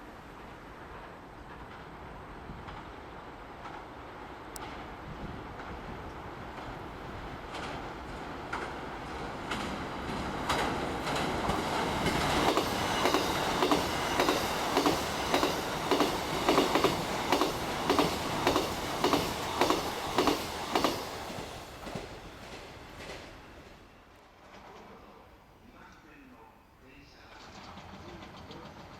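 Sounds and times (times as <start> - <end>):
electric train passing: 0.0 - 25.3, 27.1 - 28.9
wheels clacking over rail joints: 6.5 - 23.4.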